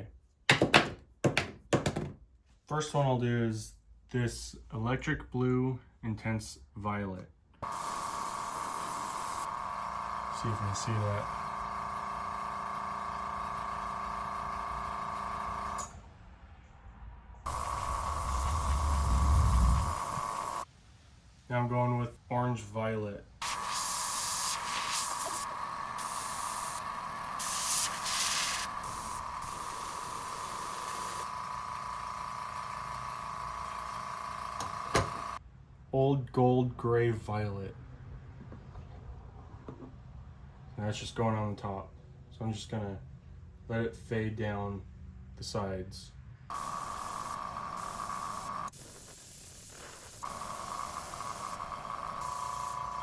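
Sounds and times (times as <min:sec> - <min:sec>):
airbrush spraying paint: 0:07.6 - 0:09.6, 0:17.5 - 0:20.7, 0:23.4 - 0:35.4, 0:46.5 - 0:53.0.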